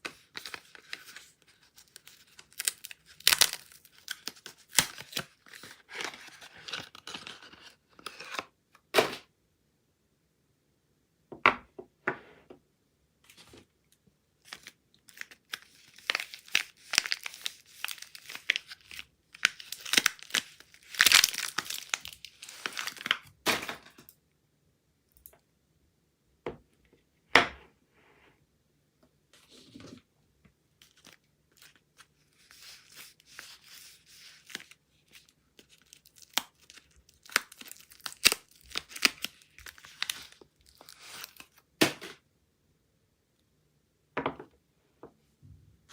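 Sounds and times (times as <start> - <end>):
wrappers tearing and crinkling: 0.4 - 8.4, 14.5 - 23.2, 32.4 - 41.6.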